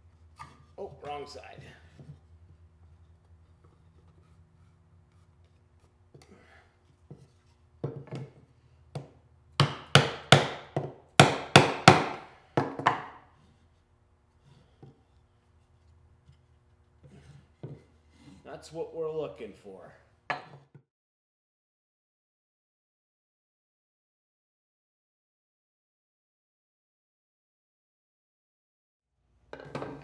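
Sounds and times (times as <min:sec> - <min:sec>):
hammer knocking on wood: 0:09.0 - 0:13.1.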